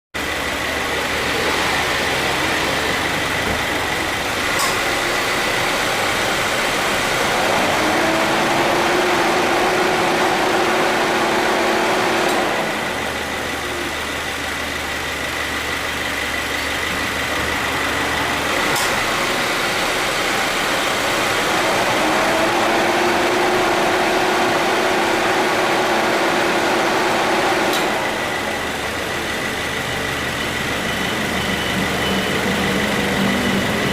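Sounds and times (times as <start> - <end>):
car engine idling: 0.2 - 33.9
compressor humming: 0.2 - 33.9.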